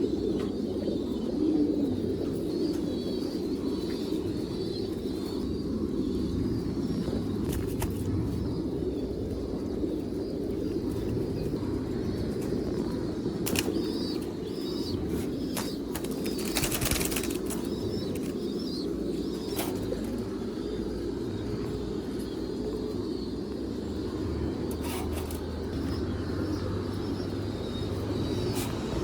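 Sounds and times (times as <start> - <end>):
pigeons flapping wings: 13.4 - 14.0, 15.5 - 18.4.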